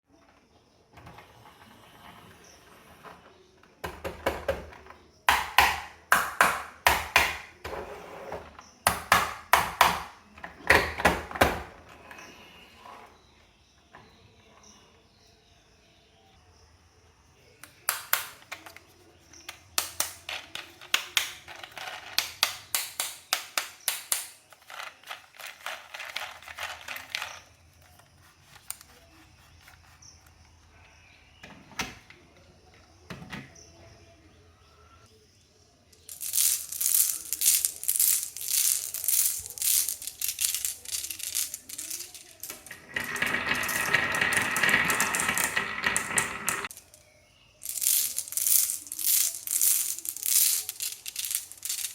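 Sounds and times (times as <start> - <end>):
toy cars clacking on wooden slope: 0.2 - 12.7, 17.6 - 30.4, 36.0 - 47.0, 47.6 - 51.9.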